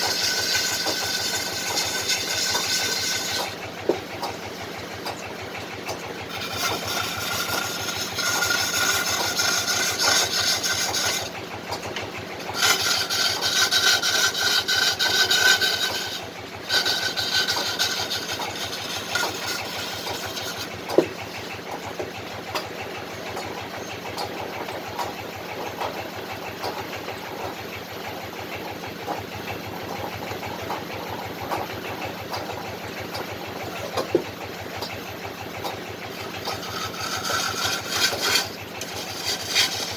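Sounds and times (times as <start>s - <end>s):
wood lathe running: 0.0s - 23.3s, 31.6s - 39.9s
chisel scraping spinning wood: 0.0s - 23.8s, 30.1s - 39.9s.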